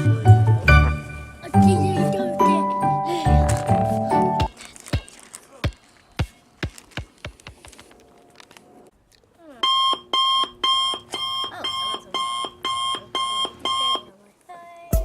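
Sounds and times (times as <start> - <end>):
electronic alarm beeping: 9.6 - 14.1.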